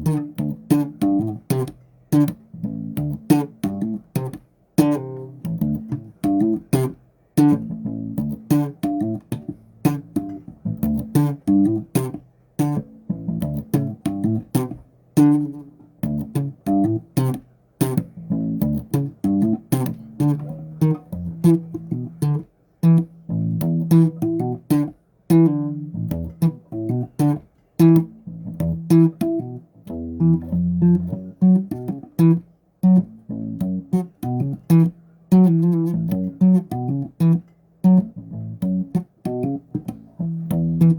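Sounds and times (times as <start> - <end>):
bass guitar plucked notes: 0.0 - 40.9.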